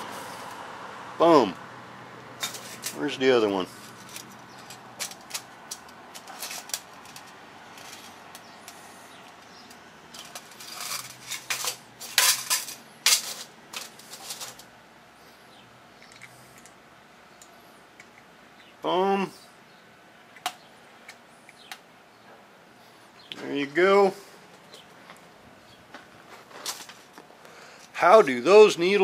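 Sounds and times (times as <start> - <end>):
small metal parts clicking and clinking: 2.4 - 3.0, 3.7 - 14.7, 16.0 - 16.8.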